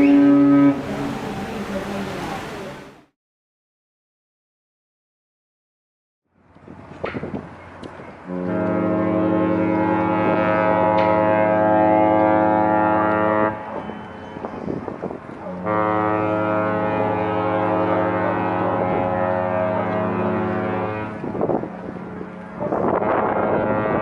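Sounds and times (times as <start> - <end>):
deep ship horn blasts: 0.0 - 2.4, 8.2 - 24.0.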